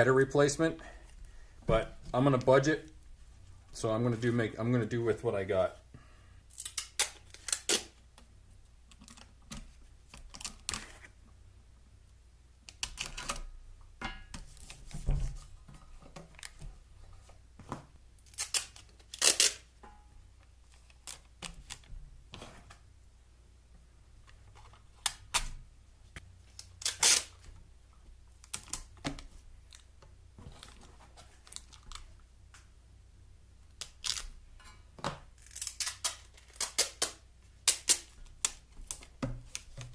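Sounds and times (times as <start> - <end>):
foil tape crackling: 18.2 - 19.7, 26.5 - 27.5.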